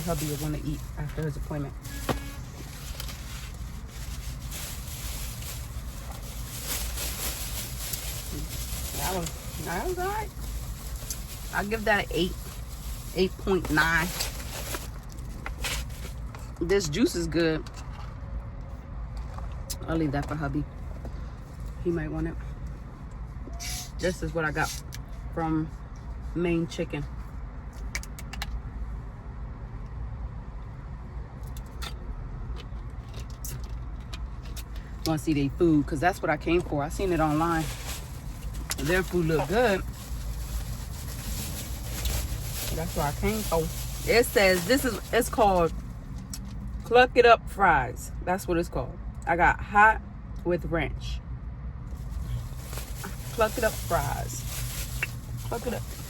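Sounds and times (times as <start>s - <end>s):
food container rustling: 0.0s - 16.6s, 37.0s - 45.8s, 52.0s - 56.0s
low rumble inside car: 0.0s - 56.0s.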